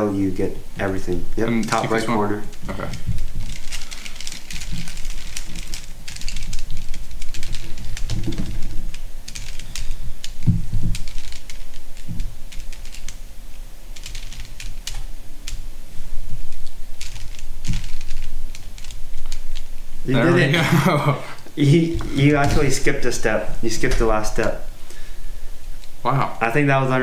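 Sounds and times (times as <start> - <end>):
plastic puzzle cube clicking: 1.6 - 13.2, 13.9 - 15.7, 16.5 - 19.8.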